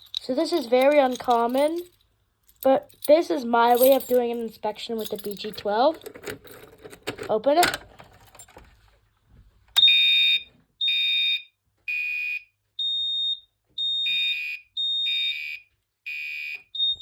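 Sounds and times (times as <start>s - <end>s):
fire alarm horn beeping: 9.8s - 17.0s.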